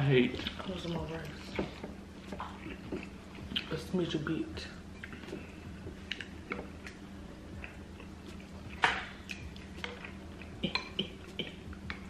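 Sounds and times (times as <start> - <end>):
eating clicks and wet smacks: 2.3 - 3.7, 6.0 - 7.0, 8.7 - 12.0.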